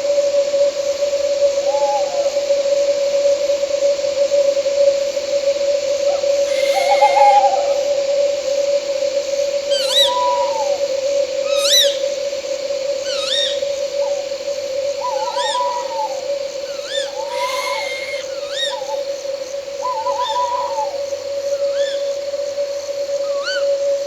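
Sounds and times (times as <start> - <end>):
night insects droning: 0.0 - 24.0
owl wavering trilled calls: 6.1 - 8.0, 9.7 - 12.1, 13.0 - 14.2, 14.9 - 19.2, 19.8 - 21.0, 21.6 - 22.1, 23.3 - 23.7
owl short arched call: 6.4 - 7.9, 15.2 - 19.0.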